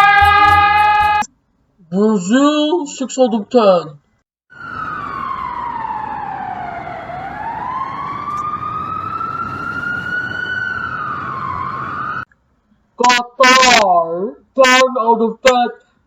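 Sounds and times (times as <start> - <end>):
wailing emergency siren: 0.0 - 1.3, 4.5 - 12.3.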